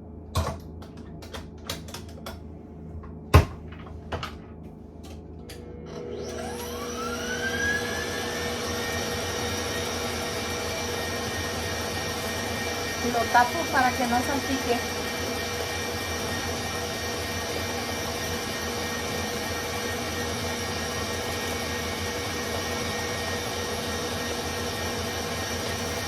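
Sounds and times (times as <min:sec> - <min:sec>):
electric mixer whining: 0:05.8 - 0:26.0.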